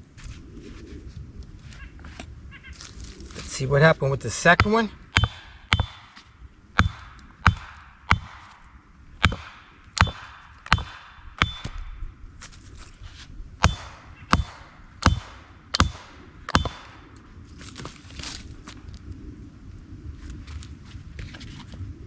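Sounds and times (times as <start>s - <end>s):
hammer striking wooden wedges: 4.4s - 8.6s, 9.2s - 11.9s, 13.6s - 17.0s.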